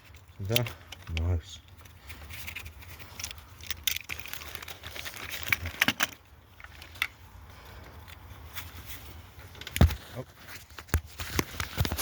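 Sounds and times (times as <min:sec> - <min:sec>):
tools clicking on engine parts: 0:00.0 - 0:07.2
light rattles and rustling: 0:00.0 - 0:12.0.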